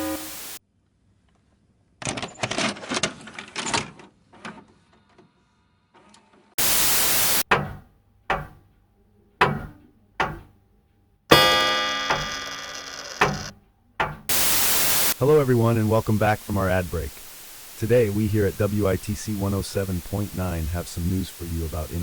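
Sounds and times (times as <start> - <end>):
burst of hiss: 0.0 - 0.6, 6.6 - 7.5, 14.1 - 22.0
sharp impacts: 6.6 - 8.6, 9.4 - 10.5, 11.3 - 15.7
knocks: 7.5 - 8.7, 9.4 - 10.6, 11.3 - 12.5, 13.2 - 14.4
loud ringing clang: 11.3 - 14.4.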